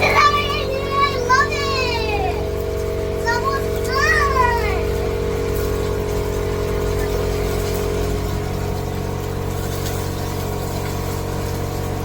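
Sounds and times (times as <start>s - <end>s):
droning hum: 0.0s - 12.0s
meat sizzling in oil: 9.1s - 12.0s.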